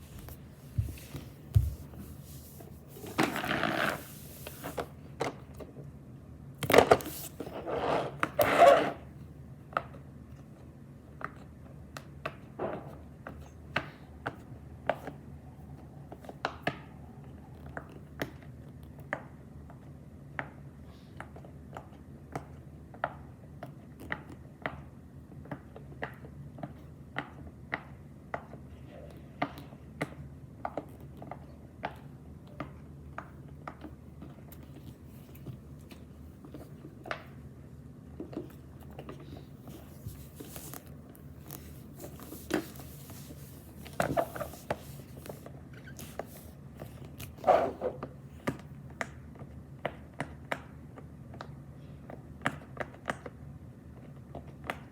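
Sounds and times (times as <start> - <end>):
fidget toy scraping: 0.0 - 4.9, 7.0 - 9.0, 39.6 - 48.0.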